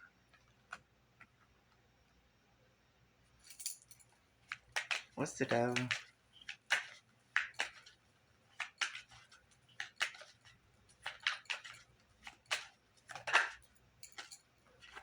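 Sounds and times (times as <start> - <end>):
cards snapping and sliding: 4.5 - 13.6.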